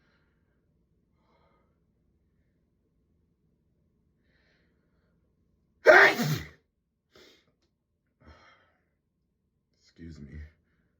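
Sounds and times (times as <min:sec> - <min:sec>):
person sneezing: 0:05.9 - 0:06.5.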